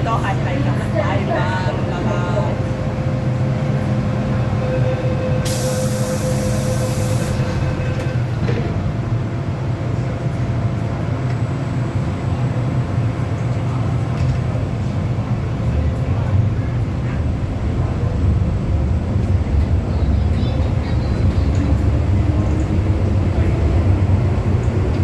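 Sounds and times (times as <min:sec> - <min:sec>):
electric train rumble: 0:00.0 - 0:25.0
hiss: 0:05.5 - 0:08.4.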